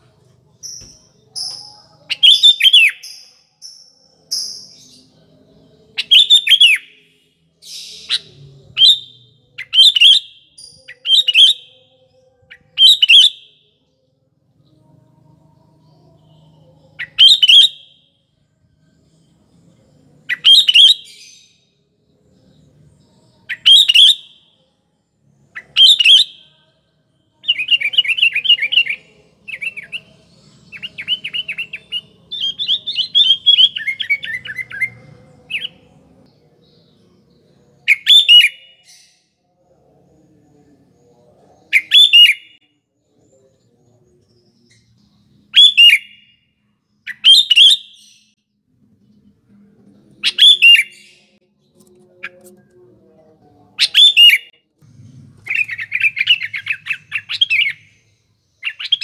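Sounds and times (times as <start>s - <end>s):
bulbul singing: 0.0s - 14.0s, 15.5s - 18.2s, 19.0s - 24.6s, 25.4s - 39.4s, 55.5s - 59.0s.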